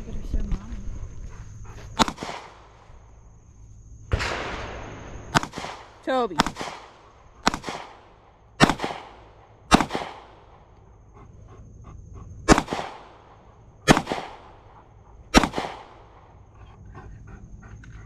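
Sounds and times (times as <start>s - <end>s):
gunshots with echo: 2.0s - 2.7s, 4.1s - 10.6s, 12.5s - 13.3s, 13.9s - 14.6s, 15.3s - 16.3s.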